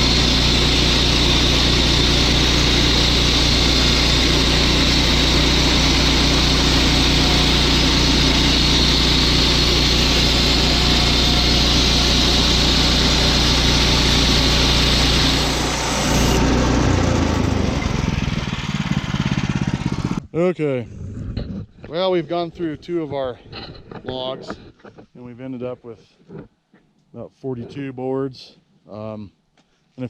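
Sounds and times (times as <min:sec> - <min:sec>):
saw blade cutting wood hiss: 0:00.0 - 0:16.6
bandsaw mill engine running: 0:00.0 - 0:20.2.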